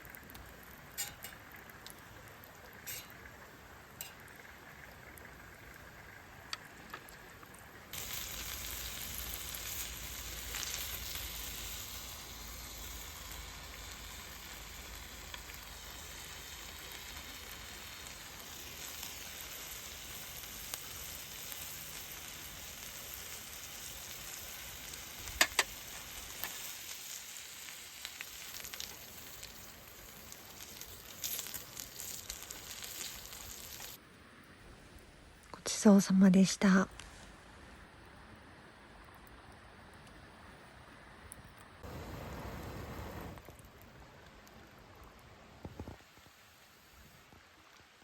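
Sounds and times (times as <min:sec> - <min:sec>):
food sizzling in hot pan: 0:00.0 - 0:34.0.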